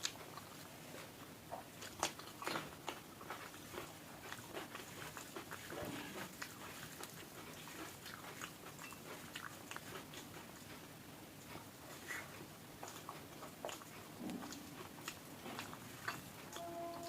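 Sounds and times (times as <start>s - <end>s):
person chewing food: 0.0s - 17.0s.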